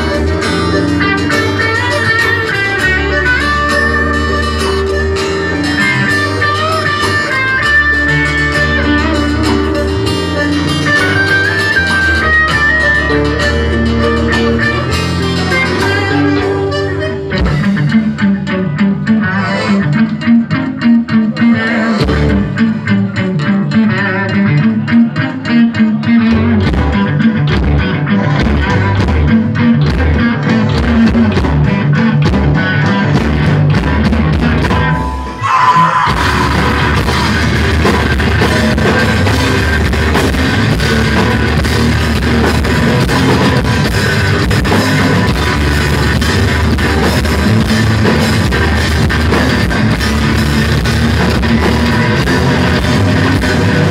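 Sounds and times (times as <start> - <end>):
live rock band instrumental: 0.0 - 53.9.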